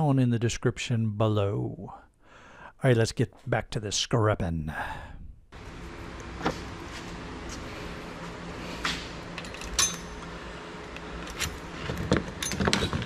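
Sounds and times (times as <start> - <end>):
steady low hum: 4.6 - 13.0
metal tools clinking on workbench: 9.4 - 10.3, 11.3 - 13.0.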